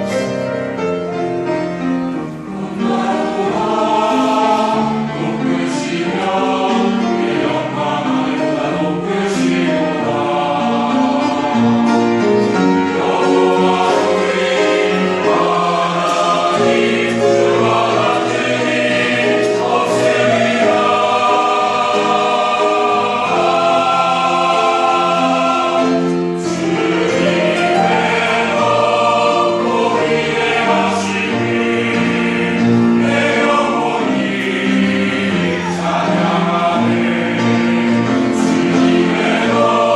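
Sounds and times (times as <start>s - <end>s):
church choir singing: 0.0s - 39.9s.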